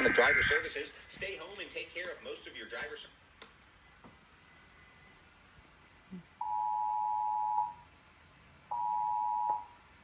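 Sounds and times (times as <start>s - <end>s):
loud steady electronic alert tone: 0.0s - 0.8s.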